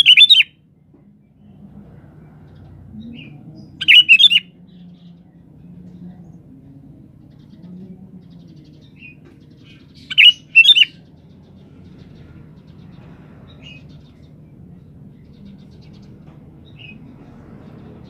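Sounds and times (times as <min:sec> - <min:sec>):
bird whistled phrases: 0:00.0 - 0:00.5, 0:03.8 - 0:04.5, 0:10.1 - 0:11.0
faint bird chirps: 0:00.0 - 0:00.5, 0:02.6 - 0:05.4, 0:07.2 - 0:11.1
low steady background hum: 0:00.0 - 0:18.0.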